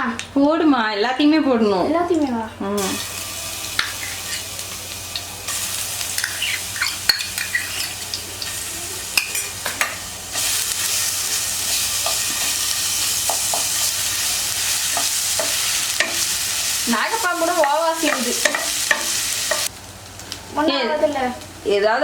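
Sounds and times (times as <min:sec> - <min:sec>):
paste sizzling in oil: 0:02.8 - 0:20.4
ladle scraping pan: 0:03.0 - 0:04.7, 0:05.5 - 0:14.3.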